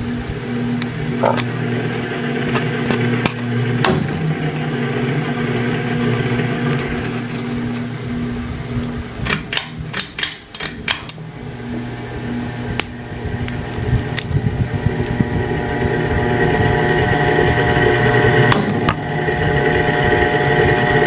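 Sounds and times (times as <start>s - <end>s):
ceiling fan motor hum: 0.0s - 21.0s.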